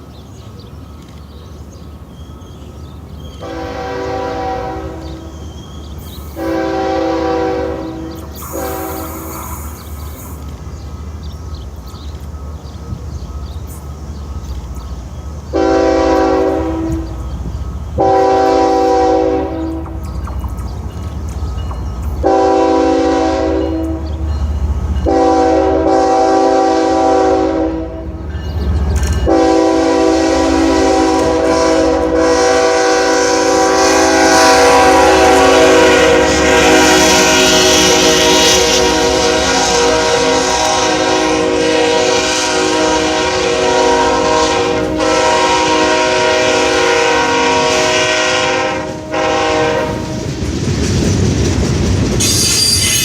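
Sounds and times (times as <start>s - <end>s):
passing train rumble: 0.0s - 53.0s
locomotive air horn blasts: 3.4s - 5.3s, 6.3s - 9.4s, 15.5s - 17.2s, 18.0s - 20.0s, 22.2s - 24.0s, 25.0s - 28.2s, 29.2s - 50.2s.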